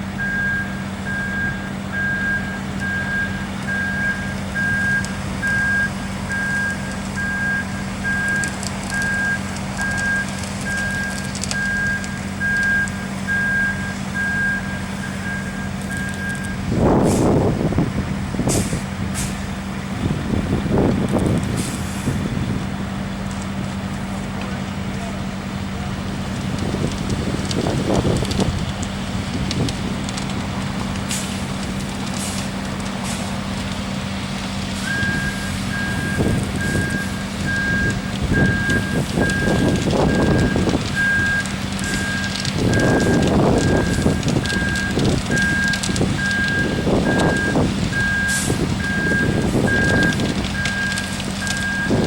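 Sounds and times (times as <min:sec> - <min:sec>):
diesel truck engine running: 0:00.0 - 0:52.0
loud hiss and rumble: 0:00.0 - 0:52.0
reversing alarm beeping: 0:00.2 - 0:16.6, 0:34.8 - 0:52.0.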